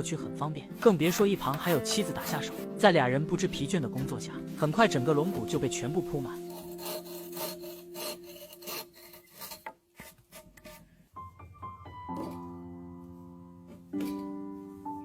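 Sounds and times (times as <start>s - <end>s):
piano music: 0.0s - 9.2s, 11.1s - 15.0s
hand tool rasping on wood: 0.8s - 2.8s, 5.0s - 10.9s.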